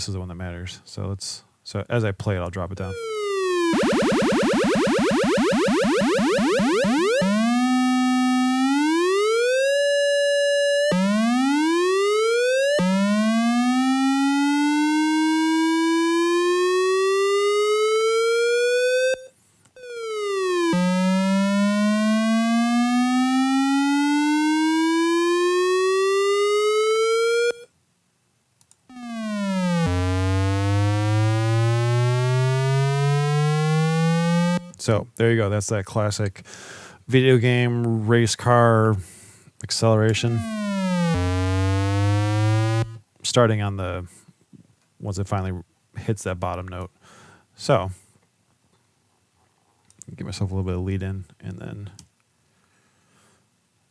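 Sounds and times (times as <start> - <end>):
chiptune synthesizer tone rising: 2.9 - 27.6, 28.9 - 34.7, 40.3 - 43.0.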